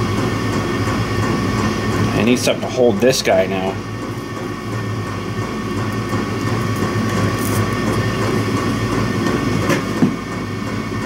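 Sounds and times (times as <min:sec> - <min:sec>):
electric soldering gun humming: 0:03.8 - 0:10.0.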